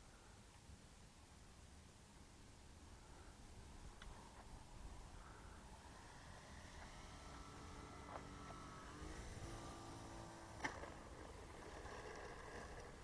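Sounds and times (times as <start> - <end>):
model plane motor whine: 5.8 - 13.0.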